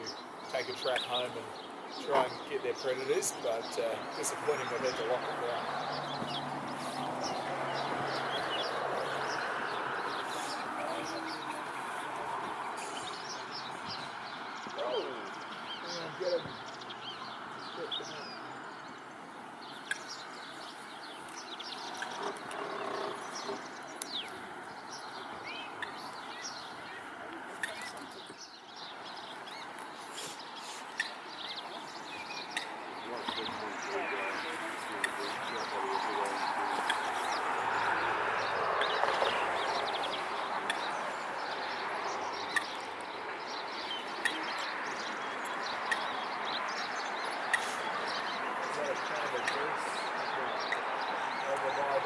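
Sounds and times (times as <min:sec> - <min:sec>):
birds chirping and twittering: 0:00.0 - 0:52.0
bird sharp clicks: 0:19.8 - 0:20.2, 0:42.4 - 0:42.9.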